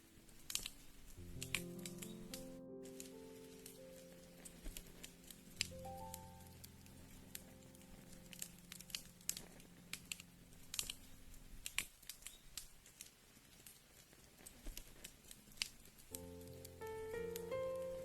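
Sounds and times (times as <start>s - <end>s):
soft background music tones: 0.0s - 11.8s, 16.1s - 18.0s
wood fire crackling: 0.0s - 18.0s.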